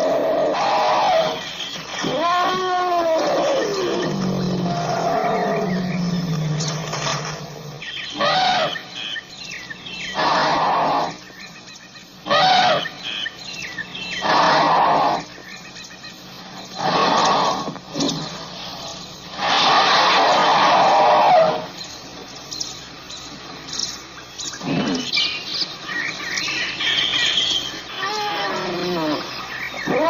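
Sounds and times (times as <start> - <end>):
elephant trumpeting calls: 0.0 - 7.0, 7.8 - 9.0, 10.0 - 11.2, 12.2 - 13.4, 14.1 - 15.3, 19.3 - 21.8, 26.1 - 30.0
elephant low rumble: 0.0 - 9.0, 16.4 - 30.0
birds chirping faintly: 0.0 - 30.0.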